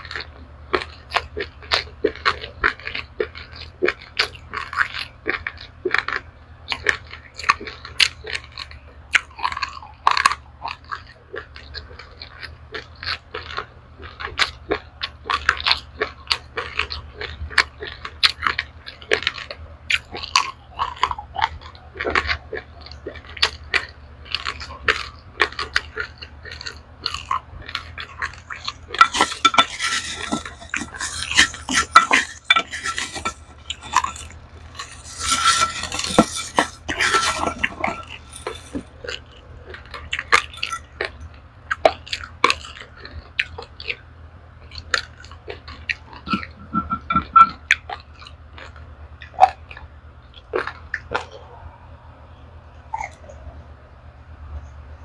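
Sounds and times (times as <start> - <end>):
grains being scooped: 29.0 - 38.8.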